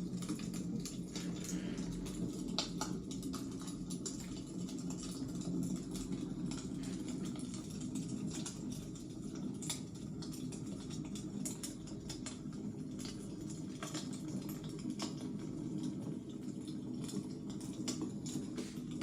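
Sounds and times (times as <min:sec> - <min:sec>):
wood fire crackling: 0:00.0 - 0:15.9, 0:16.5 - 0:19.0.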